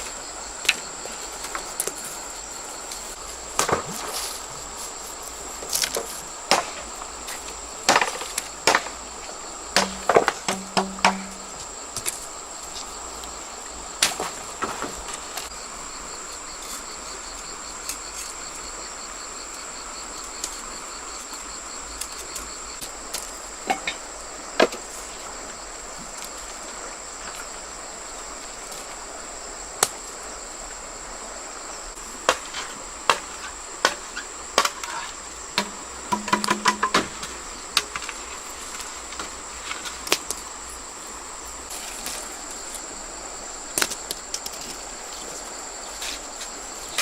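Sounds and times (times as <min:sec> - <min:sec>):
insects buzzing: 0:00.0 - 0:47.0
sharp knocks: 0:09.8 - 0:12.1, 0:35.6 - 0:38.0.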